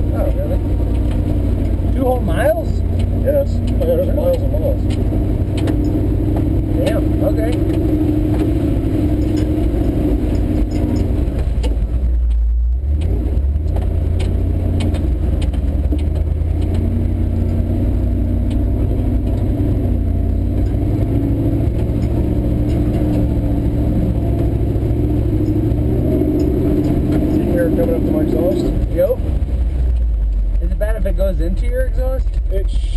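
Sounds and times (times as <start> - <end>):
truck engine rumbling: 0.0 - 32.9
cab rattles and clatter: 0.2 - 17.6.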